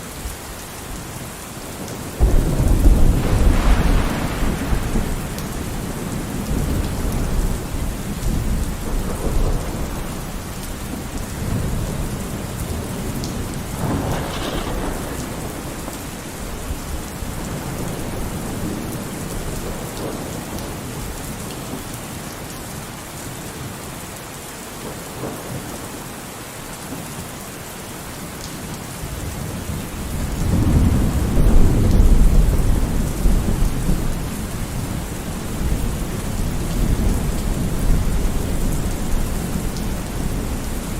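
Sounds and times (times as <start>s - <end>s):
steady rain: 0.0s - 40.9s
rolling thunder: 2.2s - 20.4s, 30.0s - 40.9s.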